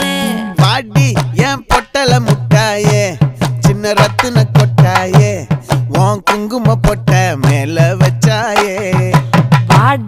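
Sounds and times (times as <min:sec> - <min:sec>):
song with plucked pitch-bending notes: 0:00.0 - 0:01.2.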